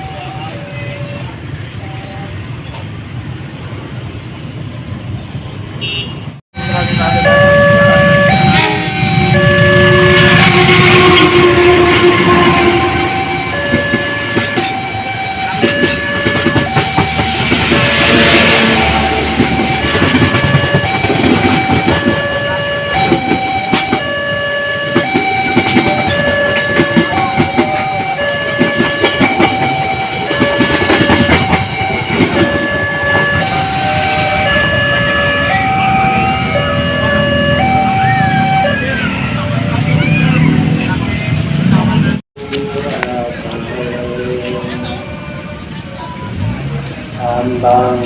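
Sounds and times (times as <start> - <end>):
train rattling on rails: 0.0 - 5.5, 6.6 - 48.0
two-tone crossing alarm: 6.6 - 40.6.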